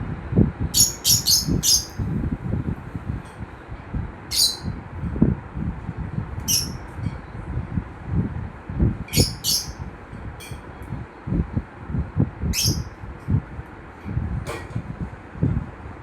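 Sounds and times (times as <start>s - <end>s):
low rumbling noise: 0.0s - 16.0s
lovebirds chirping: 0.8s - 2.0s, 4.3s - 4.7s, 6.5s - 6.8s, 9.2s - 9.8s.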